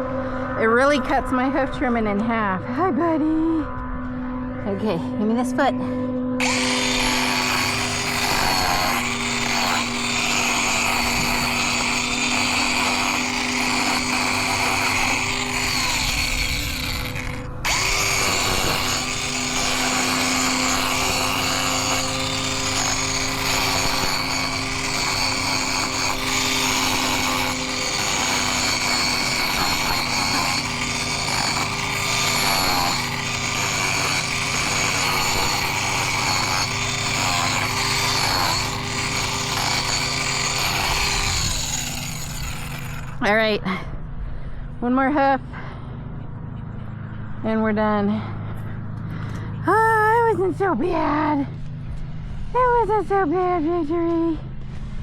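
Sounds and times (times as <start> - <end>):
angle grinder running: 6.4 - 43.5.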